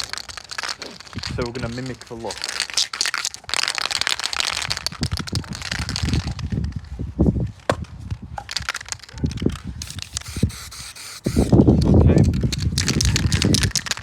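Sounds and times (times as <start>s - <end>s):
wind buffeting microphone: 1.1s - 1.8s, 4.5s - 14.0s
aerosol can spraying: 9.8s - 11.6s.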